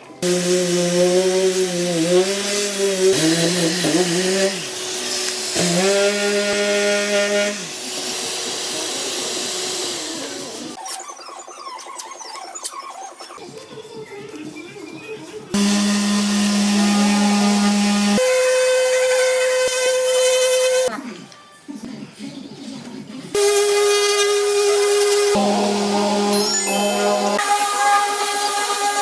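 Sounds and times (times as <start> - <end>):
power tool whining: 0.2 - 10.8, 15.6 - 20.9, 23.4 - 29.0.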